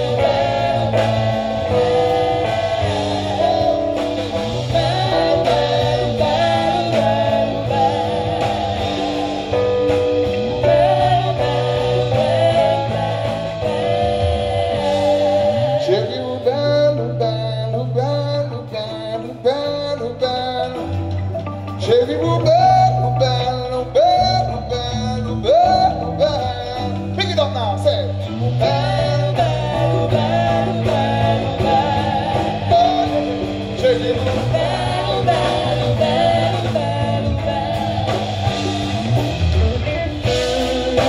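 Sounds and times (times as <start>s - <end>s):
steady beat: 0.0s - 16.1s
person singing: 0.0s - 21.1s, 21.7s - 41.0s
guitar: 0.0s - 41.0s.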